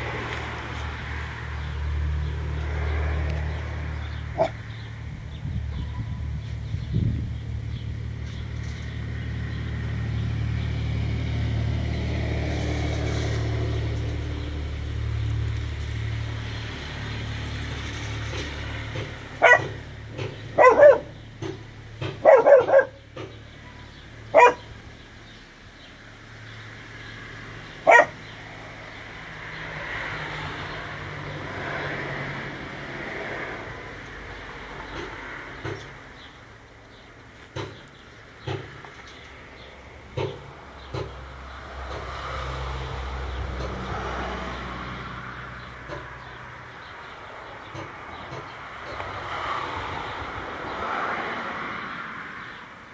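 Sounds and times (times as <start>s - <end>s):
dog barking sharply: 19.4s - 19.8s, 20.6s - 21.1s, 22.2s - 23.0s, 24.4s - 24.7s, 27.9s - 28.2s.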